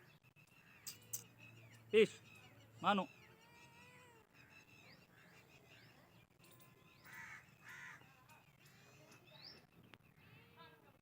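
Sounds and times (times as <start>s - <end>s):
harsh bird calls: 0.0s - 6.1s
birds chirping: 0.0s - 11.0s.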